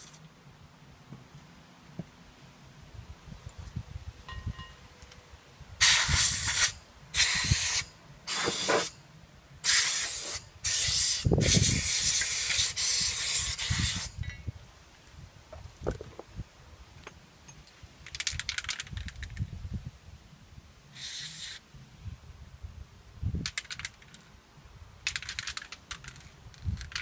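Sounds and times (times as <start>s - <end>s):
hissing spray bursts: 5.8s - 9.0s, 9.6s - 14.2s, 20.9s - 21.6s.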